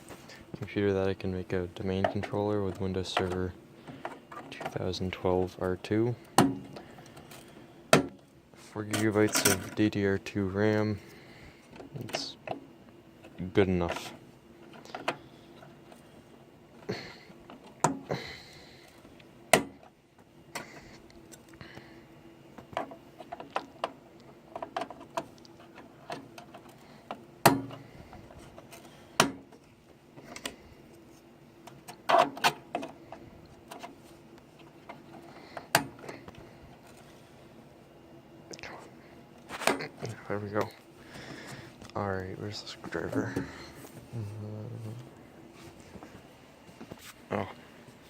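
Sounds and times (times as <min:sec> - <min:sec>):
faint steady hum: 0:00.0 - 0:48.0
clicks and knocks of computer hardware: 0:08.9 - 0:09.9, 0:22.6 - 0:30.6, 0:31.7 - 0:34.0, 0:34.8 - 0:37.0.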